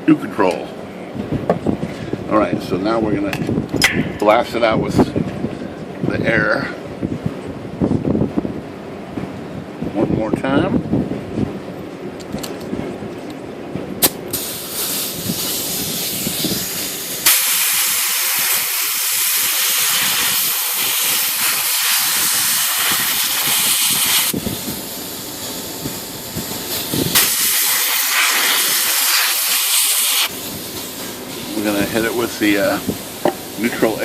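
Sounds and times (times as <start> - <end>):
air blow gun hissing: 14.0 - 34.0
loud air blasts: 14.0 - 34.0.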